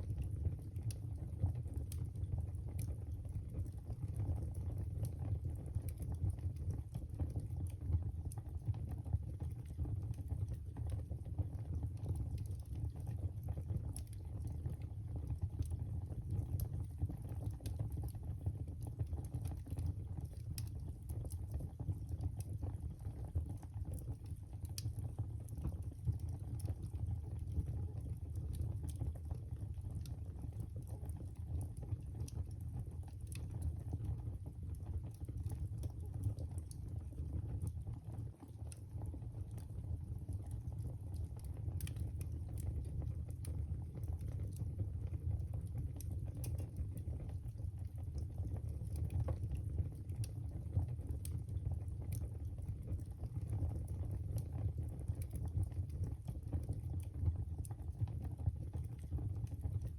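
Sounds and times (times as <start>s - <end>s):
fire crackling and popping: 0.0s - 59.9s
low rumble of flames: 0.0s - 59.9s.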